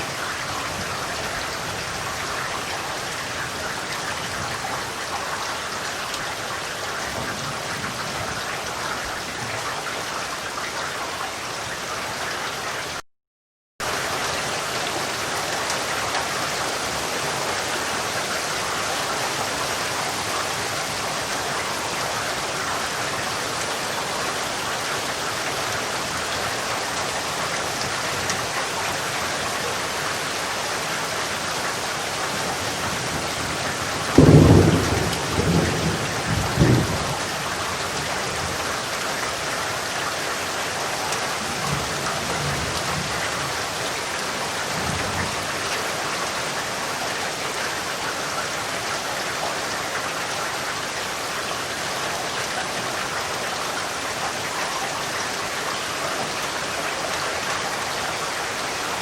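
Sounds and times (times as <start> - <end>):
steady rain falling: 0.0 - 13.0, 13.8 - 59.0
thunder clap: 34.1 - 37.3.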